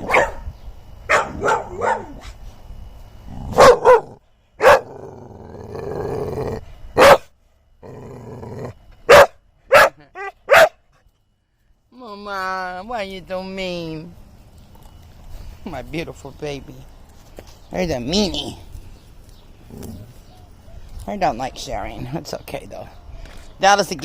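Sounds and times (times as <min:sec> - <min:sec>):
dog barking sharply: 0:00.0 - 0:00.4, 0:01.1 - 0:02.3, 0:03.6 - 0:04.9, 0:07.0 - 0:07.3, 0:09.1 - 0:10.8
dog growling: 0:03.3 - 0:06.8, 0:07.8 - 0:08.8, 0:19.6 - 0:20.3.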